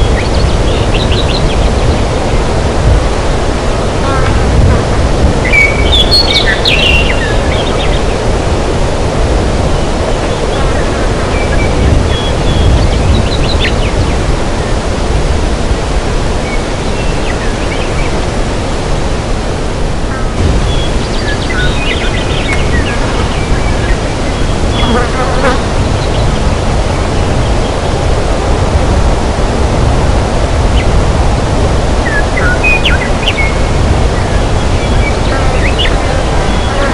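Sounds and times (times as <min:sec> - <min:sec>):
bird chirps and trills: 0:00.0 - 0:02.5, 0:05.4 - 0:08.2, 0:09.7 - 0:14.7, 0:20.1 - 0:26.5, 0:32.0 - 0:36.9
steady low rushing noise: 0:00.0 - 0:36.9.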